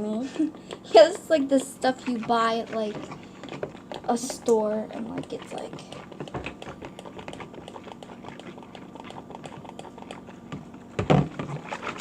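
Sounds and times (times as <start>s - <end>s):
wet slime clicking and squishing: 0.7s - 10.3s.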